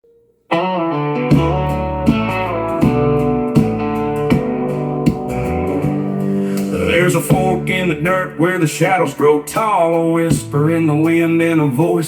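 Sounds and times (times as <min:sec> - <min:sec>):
guitar and drum music through speaker: 0:00.5 - 0:12.0.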